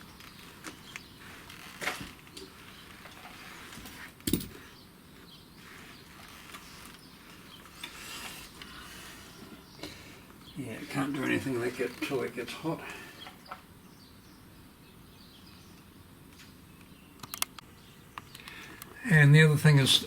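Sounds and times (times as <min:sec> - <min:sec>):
tools clicking and rustling: 0:01.6 - 0:04.7.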